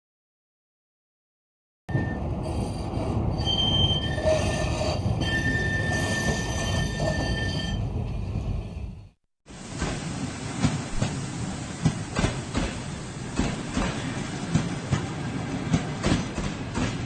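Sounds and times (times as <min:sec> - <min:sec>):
train wheels squealing on rails: 0:01.9 - 0:09.1
train rumble: 0:01.9 - 0:17.0.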